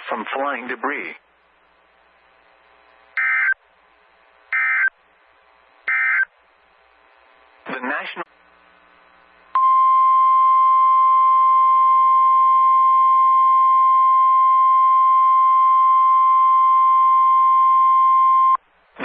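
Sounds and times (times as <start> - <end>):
loud steady alarm tone: 3.2 - 3.6, 4.5 - 4.9, 5.9 - 6.3.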